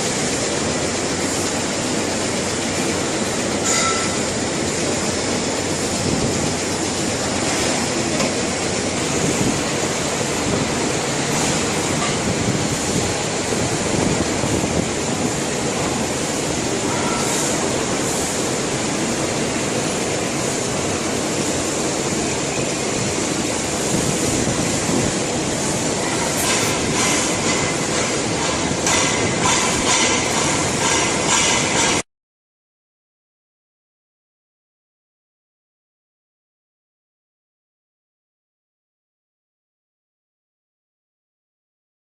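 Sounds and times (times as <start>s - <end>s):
machinery rattling and rumbling: 0.0s - 16.9s, 17.5s - 32.0s.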